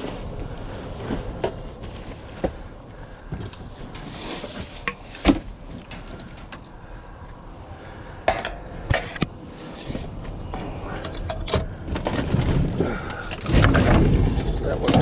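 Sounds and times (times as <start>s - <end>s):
junk knocking and clunking: 10.1s - 15.0s.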